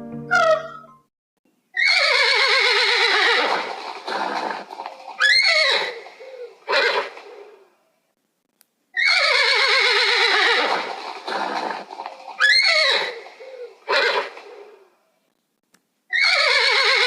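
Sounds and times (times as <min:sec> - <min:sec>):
animal calling: 0:00.3 - 0:01.0, 0:01.8 - 0:07.7, 0:09.0 - 0:15.0, 0:16.1 - 0:17.0.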